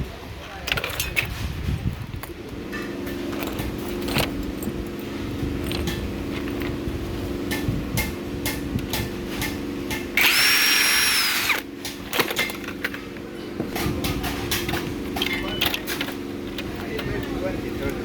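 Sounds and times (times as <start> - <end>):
steady low hum: 1.2 - 18.0
power drill whine: 10.2 - 11.7.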